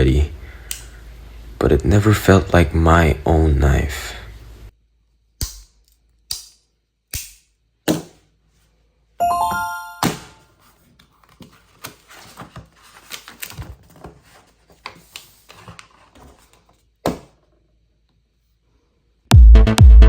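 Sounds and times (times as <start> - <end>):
faint clicks and rustles of handling: 10.7 - 17.0
electronic music with heavy beat: 19.3 - 20.0.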